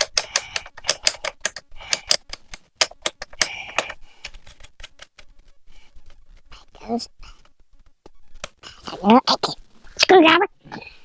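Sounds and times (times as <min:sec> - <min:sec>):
rapid ratcheting clicks: 0:00.0 - 0:05.4.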